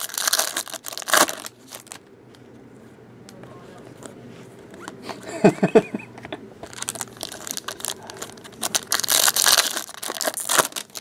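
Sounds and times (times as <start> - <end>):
wrapper crinkling and tearing: 0.0 - 2.0, 6.6 - 11.0.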